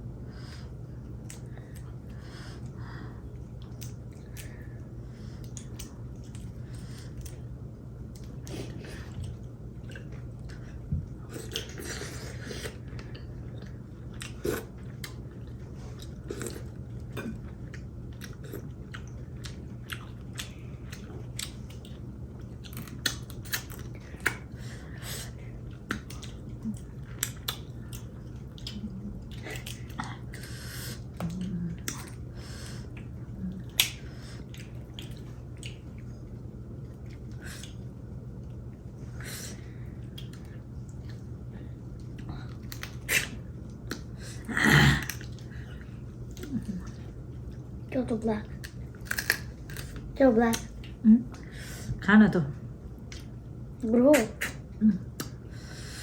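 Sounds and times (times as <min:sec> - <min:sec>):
steady low hum: 0:00.0 - 0:56.0
people chewing: 0:00.3 - 0:47.9, 0:48.5 - 0:52.0, 0:52.9 - 0:53.4
shellfish shells cracking: 0:49.0 - 0:49.9.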